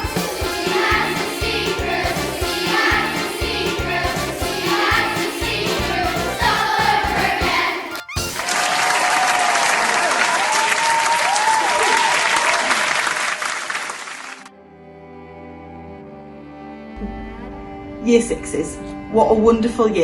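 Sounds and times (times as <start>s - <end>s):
song with singing over a beat: 0.0s - 8.0s
crowd clapping and cheering: 0.0s - 14.5s
high whoops: 8.1s - 12.6s.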